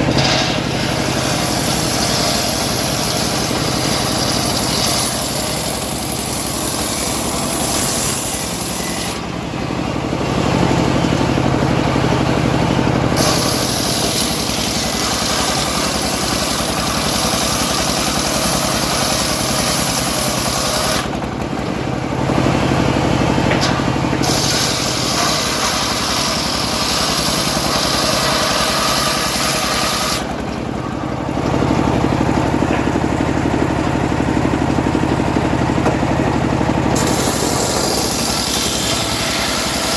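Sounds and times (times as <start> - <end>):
sawmill engine drone: 0.0 - 39.9
saw blade hissing through wood: 13.2 - 21.1, 24.2 - 30.3, 37.0 - 39.9.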